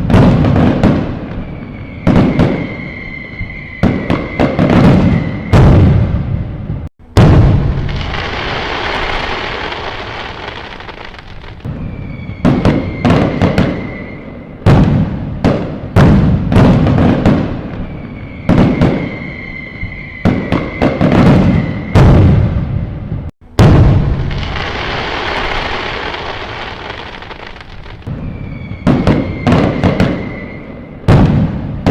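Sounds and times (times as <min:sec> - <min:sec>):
fireworks bangs: 0:00.0 - 0:31.9
fireworks crackling: 0:00.0 - 0:31.9
high whistle: 0:01.3 - 0:05.7, 0:11.7 - 0:14.6, 0:17.8 - 0:22.2, 0:28.1 - 0:31.1.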